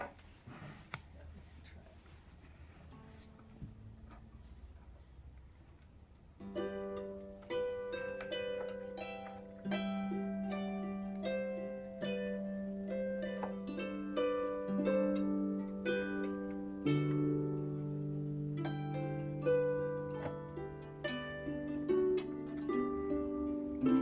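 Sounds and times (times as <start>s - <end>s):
plucked harp-like notes: 6.4s - 24.0s.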